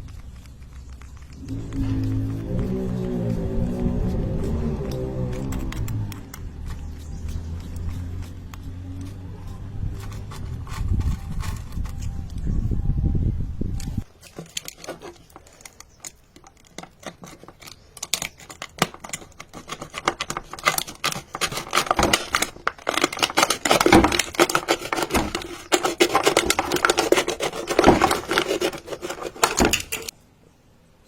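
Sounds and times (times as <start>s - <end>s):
plastic bottle crinkling: 14.0s - 30.1s.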